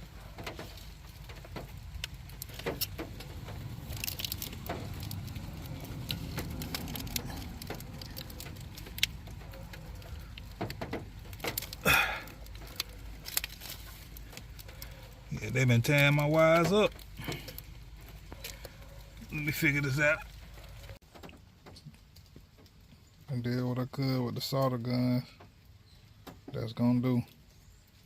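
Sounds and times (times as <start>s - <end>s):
rustle: 0.0s - 28.0s.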